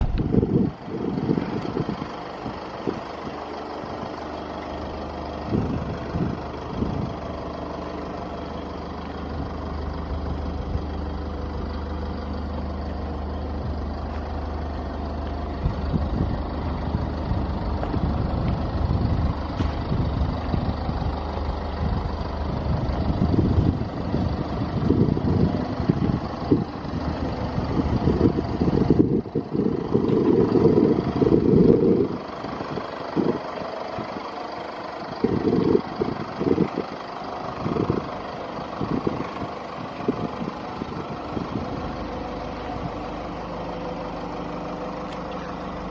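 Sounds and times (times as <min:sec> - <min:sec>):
wind buffeting the microphone: 0:00.0 - 0:03.4, 0:05.4 - 0:07.3, 0:15.5 - 0:34.3, 0:35.1 - 0:42.0
vehicle engine idling: 0:00.0 - 0:45.9.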